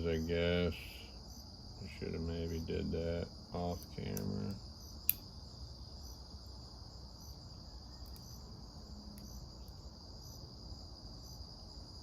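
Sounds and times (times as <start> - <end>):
crickets chirping: 0.0 - 12.0
faint clicks of multitool: 3.8 - 5.3.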